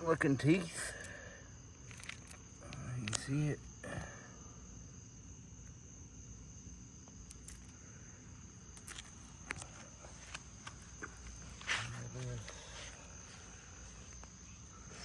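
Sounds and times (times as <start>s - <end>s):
high insect trill: 0.0s - 15.0s
chainsaw chain clicking: 1.9s - 3.3s.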